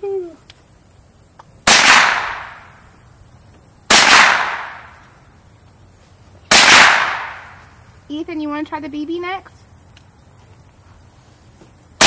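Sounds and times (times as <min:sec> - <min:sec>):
gunshots echoing: 0:01.6 - 0:02.7, 0:03.9 - 0:05.0, 0:06.5 - 0:07.6.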